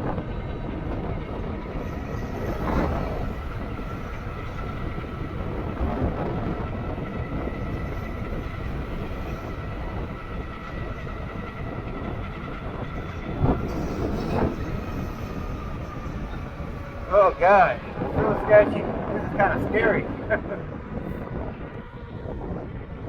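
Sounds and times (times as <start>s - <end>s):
wind buffeting microphone: 0.0s - 23.0s
faint high whine: 13.0s - 20.0s.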